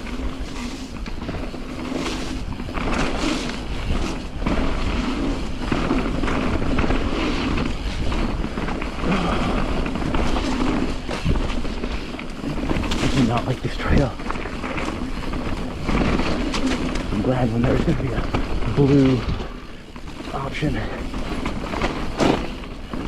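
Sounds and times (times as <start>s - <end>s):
bike rattling over bumps: 0.0s - 23.0s
bike tyres on dirt: 0.0s - 23.0s.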